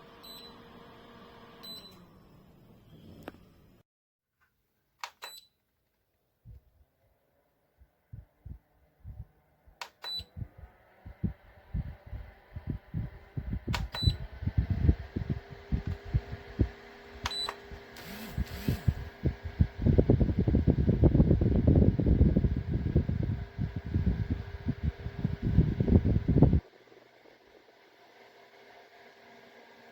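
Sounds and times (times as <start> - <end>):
faint motor hum: 0.0 - 3.8, 6.4 - 29.9
fan airflow buffeting microphone: 7.8 - 28.0.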